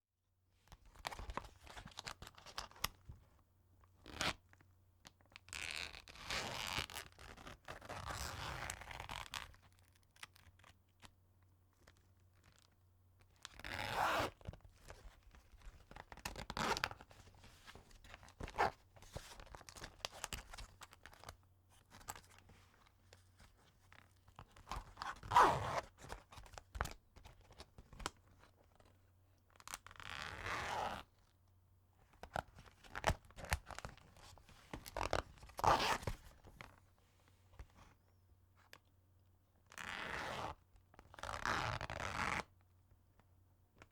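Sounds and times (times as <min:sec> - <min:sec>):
zipper rasping: 0:13.6 - 0:14.4, 0:25.3 - 0:25.8, 0:30.0 - 0:31.0, 0:35.6 - 0:36.0, 0:39.8 - 0:40.5, 0:41.2 - 0:42.4.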